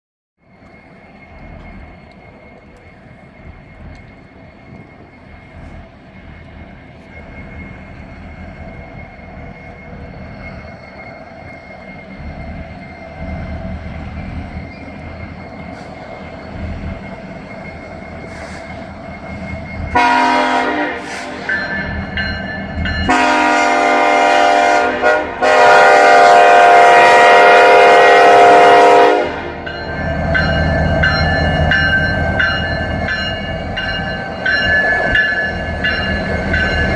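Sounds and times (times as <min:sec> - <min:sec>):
diesel locomotive engine rumble: 0:00.4 - 0:36.9
rail noise: 0:00.4 - 0:36.9
locomotive horn blasts: 0:19.9 - 0:21.6, 0:23.0 - 0:29.6.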